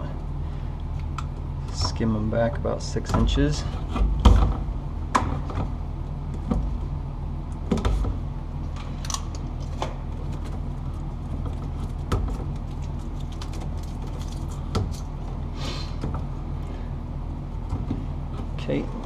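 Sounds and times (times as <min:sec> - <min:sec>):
steady low hum: 0:00.0 - 0:19.0
cable and tools rattling: 0:08.8 - 0:15.4.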